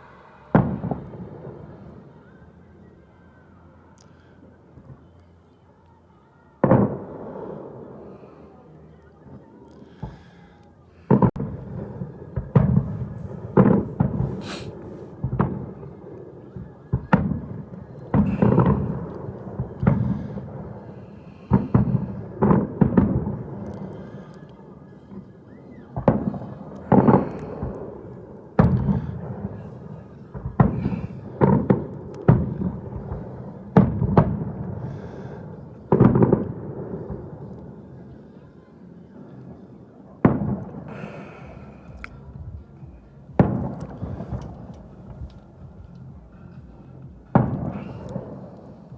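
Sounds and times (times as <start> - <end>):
fireworks bursting: 0.0 - 2.3, 6.6 - 10.4, 11.0 - 24.2, 25.0 - 37.9, 40.2 - 48.9
rumbling echo: 40.2 - 48.9.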